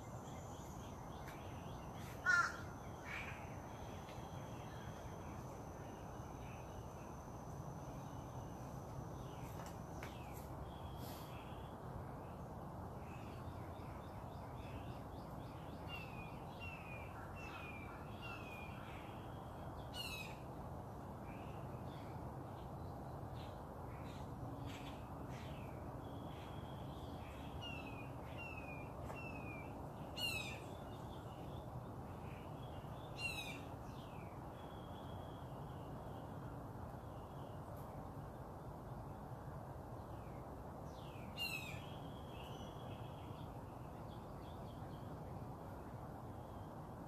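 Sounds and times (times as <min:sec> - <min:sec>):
background hiss: 0:00.0 - 0:17.5
crow-like bird call: 0:02.2 - 0:03.5.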